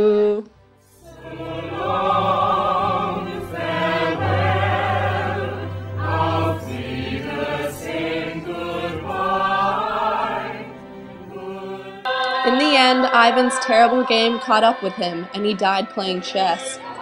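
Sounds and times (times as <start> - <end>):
choir singing held chords: 0.5 - 17.0.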